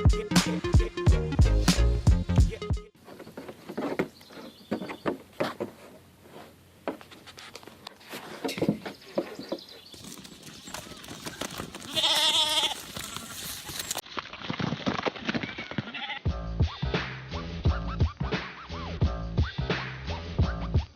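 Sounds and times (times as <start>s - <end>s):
hooves clattering on hard ground: 3.0s - 16.2s
wavering bleat: 11.8s - 13.4s, 15.8s - 16.3s.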